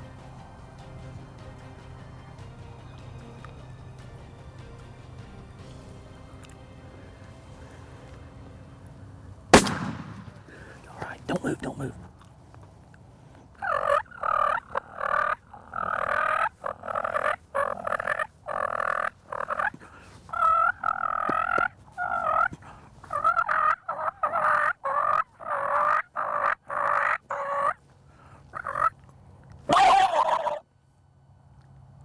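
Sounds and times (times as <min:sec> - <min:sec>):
turkeys gobbling: 0:00.0 - 0:08.4, 0:13.6 - 0:27.8, 0:28.5 - 0:29.0, 0:29.7 - 0:30.6.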